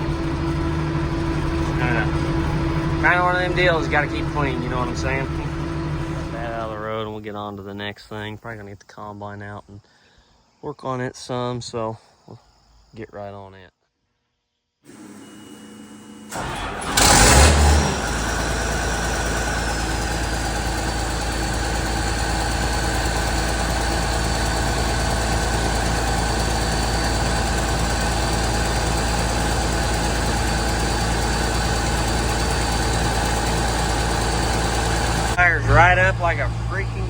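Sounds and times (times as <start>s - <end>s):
diesel engine starting and idling: 0.0s - 7.5s, 14.9s - 37.0s
faint high whine: 0.0s - 9.3s.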